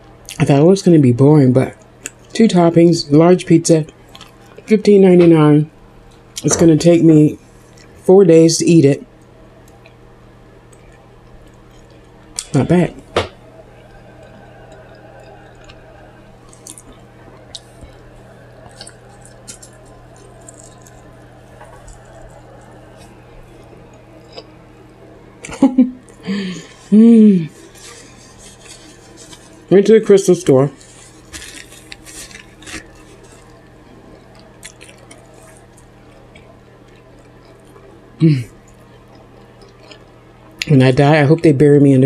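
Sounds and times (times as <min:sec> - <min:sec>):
low hum: 0:00.0 - 0:40.6
person chewing with mouth open: 0:03.9 - 0:04.7, 0:10.6 - 0:29.7, 0:30.8 - 0:40.7
wet mouth clicks: 0:34.2 - 0:36.5.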